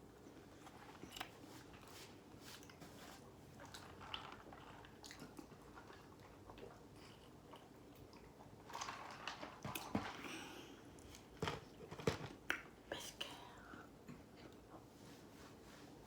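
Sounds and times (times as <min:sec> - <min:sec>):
chewing fried chicken: 0:00.1 - 0:09.9.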